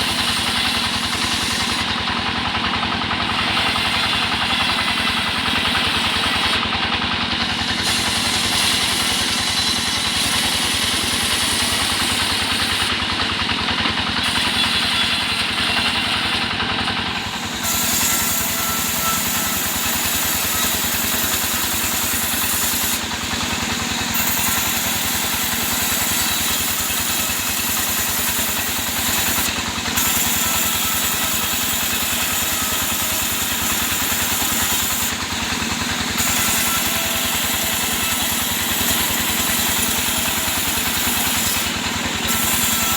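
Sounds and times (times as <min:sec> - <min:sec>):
engine-driven wood saw running: 0:00.0 - 0:42.9.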